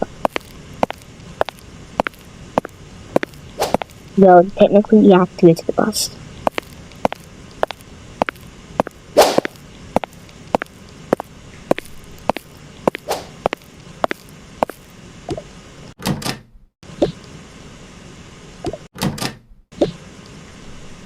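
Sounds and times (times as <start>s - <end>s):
footsteps walking: 0.0s - 4.1s, 6.4s - 14.9s
brushing swish: 3.6s - 3.9s, 9.2s - 9.6s, 13.0s - 13.4s.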